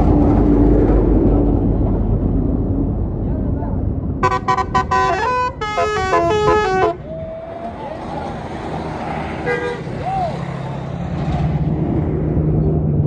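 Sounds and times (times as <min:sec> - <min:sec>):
bus engine rumble: 0:00.0 - 0:13.0
multi-tone bus horn melody: 0:04.2 - 0:07.1.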